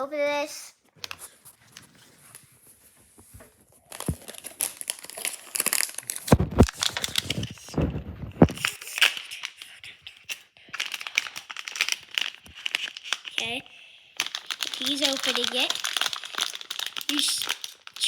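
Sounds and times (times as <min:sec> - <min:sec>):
packaging tearing and crinkling: 0:03.8 - 0:13.6, 0:14.2 - 0:18.0.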